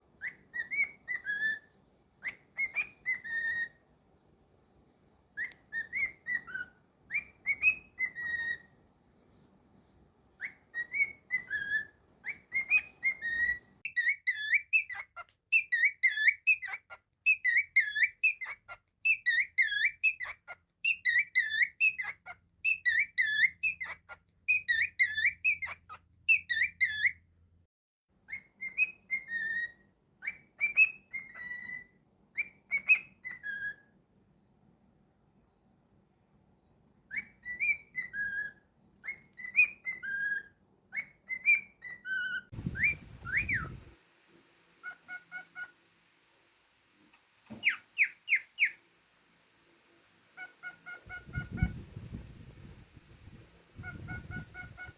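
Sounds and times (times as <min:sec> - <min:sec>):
cockatiel whistling: 0:00.2 - 0:03.8, 0:05.4 - 0:08.8, 0:10.4 - 0:27.2, 0:28.3 - 0:33.9, 0:37.1 - 0:43.9, 0:44.8 - 0:45.8, 0:47.5 - 0:48.8, 0:50.4 - 0:52.2, 0:53.8 - 0:54.9.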